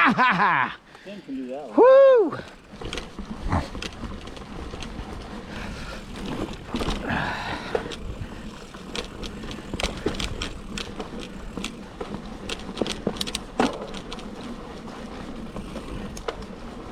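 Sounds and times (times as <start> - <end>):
bike tyres rolling on dirt: 0.4 - 16.9
chain and frame rattling: 2.4 - 14.6.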